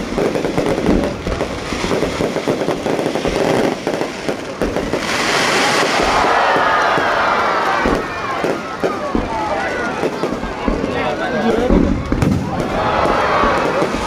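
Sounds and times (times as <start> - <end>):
fireworks crackling bangs: 0.0 - 14.0
loud hiss: 4.8 - 7.2.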